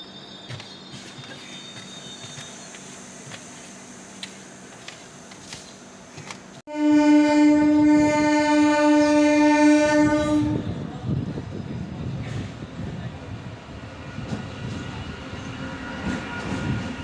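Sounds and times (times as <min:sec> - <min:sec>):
train rumbling: 0:00.0 - 0:17.0
train horn blast: 0:06.7 - 0:10.8.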